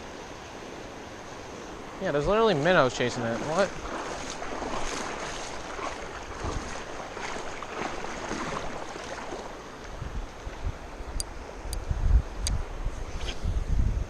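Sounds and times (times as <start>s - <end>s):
river water rushing: 0.0s - 11.7s
wind on microphone: 3.2s - 14.0s.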